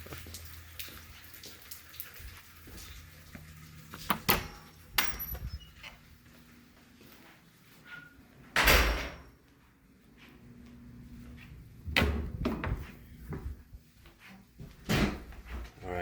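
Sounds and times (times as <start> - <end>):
door latch clicks and knocks: 4.1 - 5.2
door shutting thud: 4.1 - 5.5, 8.6 - 9.3, 11.9 - 12.9, 14.8 - 15.3.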